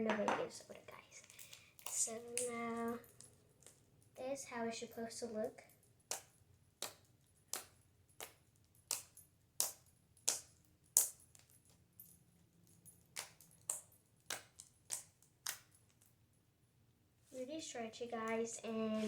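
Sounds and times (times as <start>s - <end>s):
slime clicking and popping: 6.1s - 11.2s, 13.1s - 15.7s.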